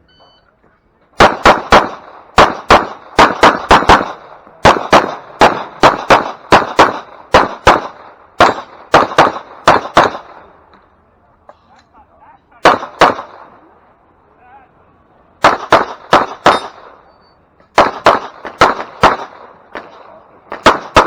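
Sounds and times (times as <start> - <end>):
pistol shots: 1.2 - 10.6, 12.6 - 13.6, 15.4 - 17.1, 17.7 - 21.0.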